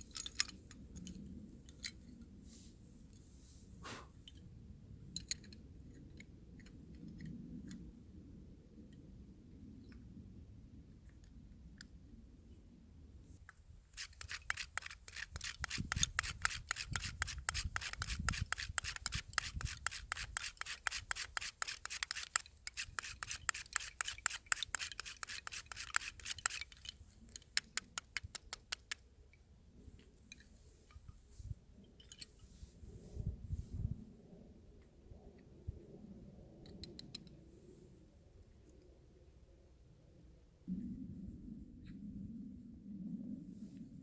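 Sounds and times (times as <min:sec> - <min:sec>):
rapid scraping strokes: 0:13.9 - 0:29.0.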